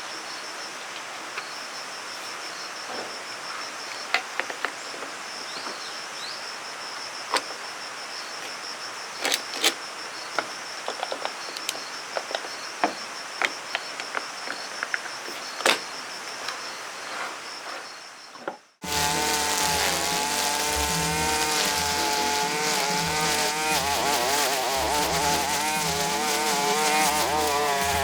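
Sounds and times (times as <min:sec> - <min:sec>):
constant hiss: 0:18.8 - 0:28.0.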